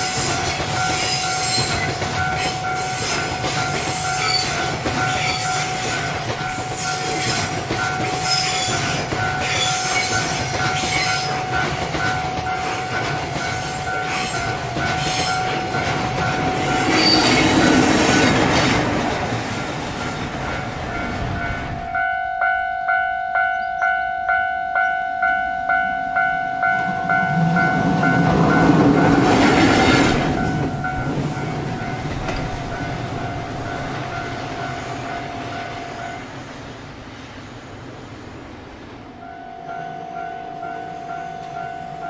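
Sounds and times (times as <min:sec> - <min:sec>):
level crossing alarm ringing: 0:00.0 - 0:18.6, 0:39.2 - 0:42.0
train wheel and rail noise: 0:00.0 - 0:42.0.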